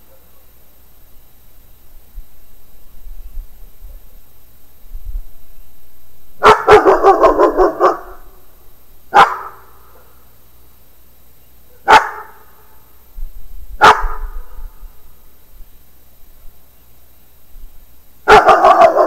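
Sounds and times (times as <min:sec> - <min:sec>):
dog barking: 0:06.4 - 0:08.3, 0:09.1 - 0:10.2, 0:11.7 - 0:12.6, 0:13.8 - 0:14.6, 0:18.3 - 0:19.0.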